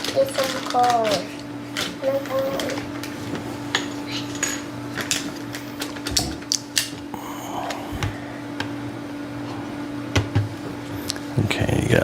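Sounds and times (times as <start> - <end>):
plastic toy parts clattering: 0.0 - 2.8.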